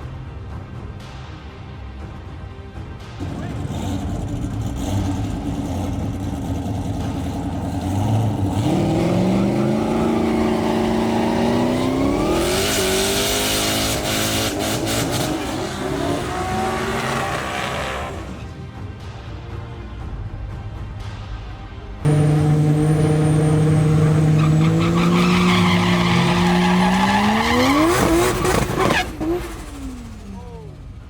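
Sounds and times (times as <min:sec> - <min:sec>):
racing car engine revving: 0:03.2 - 0:18.6, 0:22.1 - 0:30.6.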